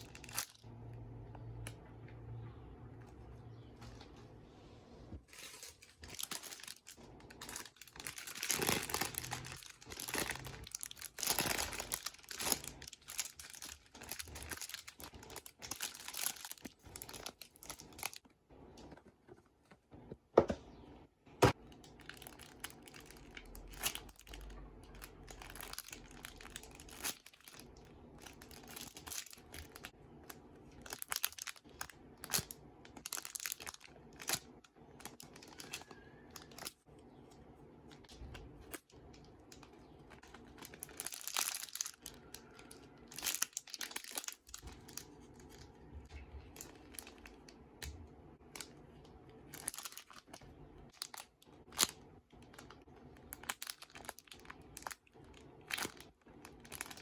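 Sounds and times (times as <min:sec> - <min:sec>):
plastic packaging crinkling: 0:00.0 - 0:01.7, 0:05.2 - 0:19.0, 0:21.5 - 0:57.0.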